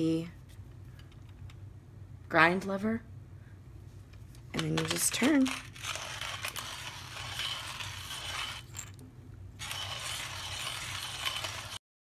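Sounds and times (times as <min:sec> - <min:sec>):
manual coffee grinder grinding: 0:04.7 - 0:08.9, 0:09.6 - 0:11.8.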